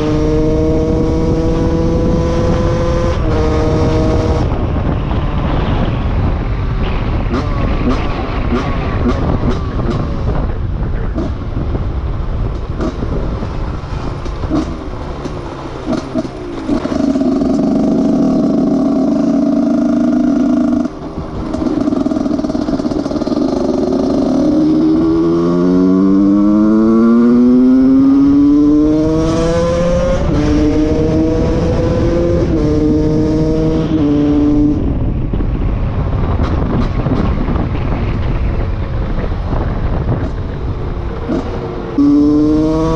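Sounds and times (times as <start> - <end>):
two-stroke motorcycle engine revving: 0.0 - 4.8, 15.8 - 35.0, 39.9 - 42.9.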